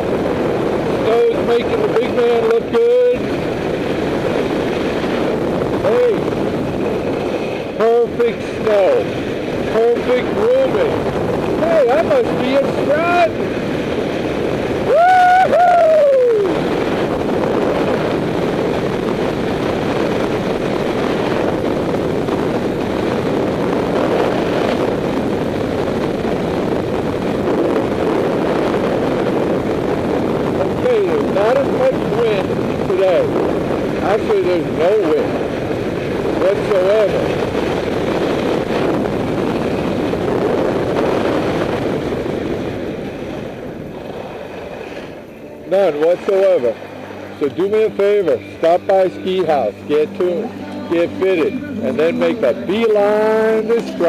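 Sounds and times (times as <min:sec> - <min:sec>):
skis scraping on snow: 0:34.7 - 0:48.0.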